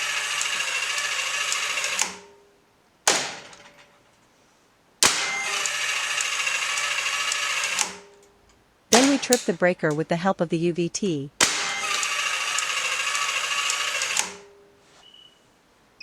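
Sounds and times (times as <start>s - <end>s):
spring-charging motor whirring: 0.0s - 2.3s, 5.2s - 8.1s, 11.6s - 14.5s
circuit breaker clack: 0.0s - 2.4s, 3.1s - 4.0s, 5.0s - 10.1s, 11.4s - 14.6s.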